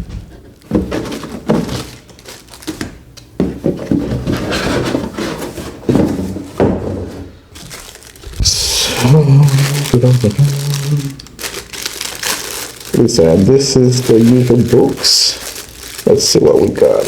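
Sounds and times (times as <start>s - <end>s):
cardboard box knocks and thunks: 0.0s - 1.9s, 3.4s - 7.3s
cardboard rubbing and scraping: 3.9s - 6.5s.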